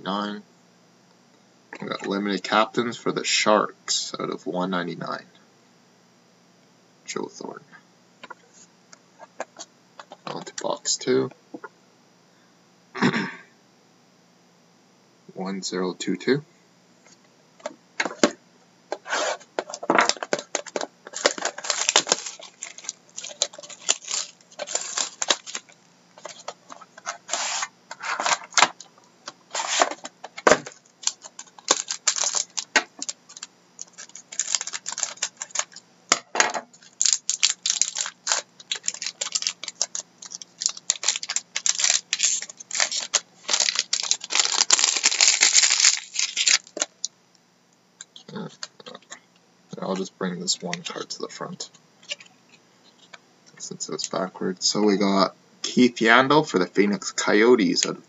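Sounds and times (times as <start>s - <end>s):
faint steady hum: 0.0s - 58.0s
cards shuffled and clicking: 18.9s - 28.9s
packaging crackling and tearing: 19.7s - 28.9s, 29.5s - 35.8s, 36.8s - 47.0s.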